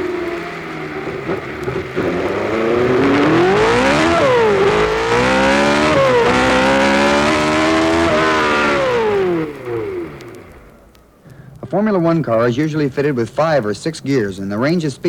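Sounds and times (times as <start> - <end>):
racing engine accelerating: 0.0 - 11.0.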